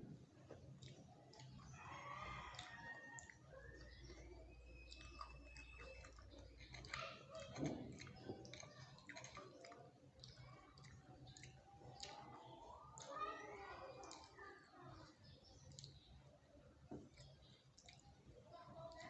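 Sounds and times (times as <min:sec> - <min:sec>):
mouth clicks: 0:02.5 - 0:13.2.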